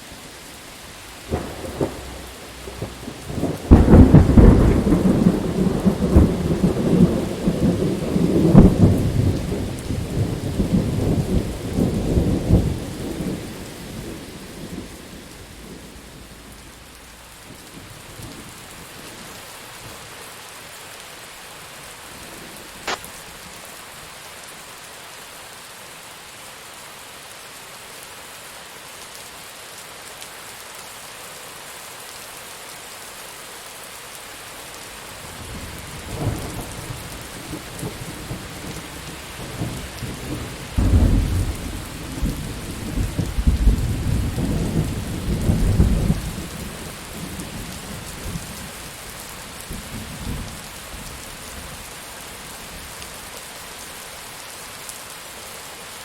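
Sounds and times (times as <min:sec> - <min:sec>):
steady rain: 0:00.0 - 0:56.0
thunder rumbling: 0:01.3 - 0:18.4, 0:35.3 - 0:48.6.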